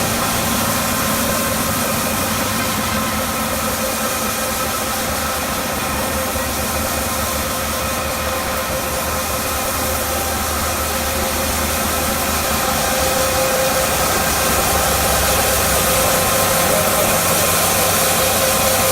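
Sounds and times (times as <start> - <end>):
washing machine motor hum: 0.0 - 18.9.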